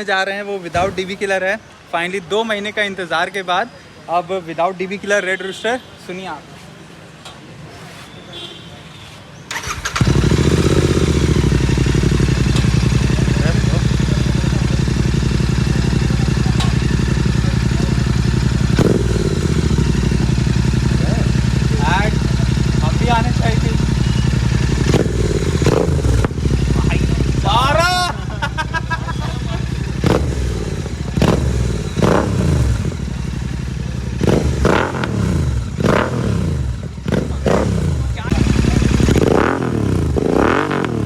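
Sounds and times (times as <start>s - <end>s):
motorcycle engine idling: 9.5s - 40.8s.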